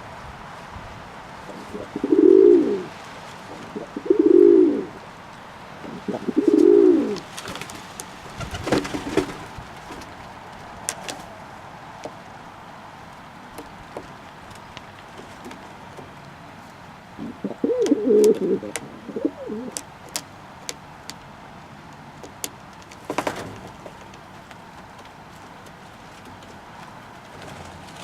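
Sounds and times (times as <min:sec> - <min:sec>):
pigeon cooing: 0:01.5 - 0:05.0, 0:05.8 - 0:07.3, 0:17.2 - 0:19.8.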